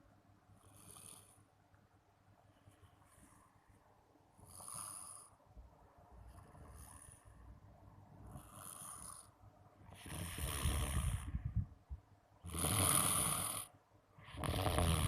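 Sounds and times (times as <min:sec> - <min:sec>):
person snoring: 0:04.5 - 0:05.4, 0:08.3 - 0:09.3, 0:10.0 - 0:11.4, 0:12.4 - 0:15.0.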